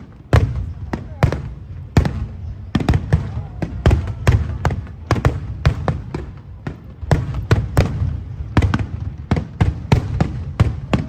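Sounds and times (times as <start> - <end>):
fireworks bangs: 0.0 - 11.0.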